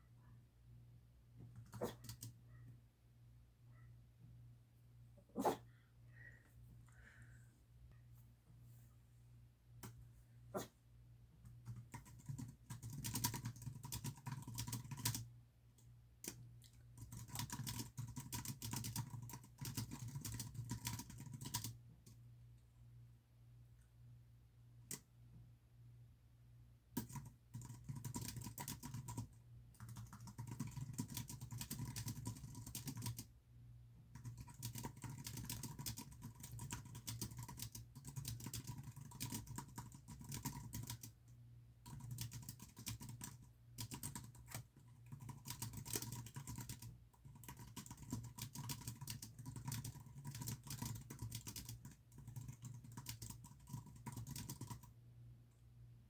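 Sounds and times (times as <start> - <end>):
keyboard typing: 1.5 - 2.4, 11.4 - 15.3, 16.2 - 22.2, 27.0 - 33.3, 34.1 - 41.2, 41.8 - 54.9.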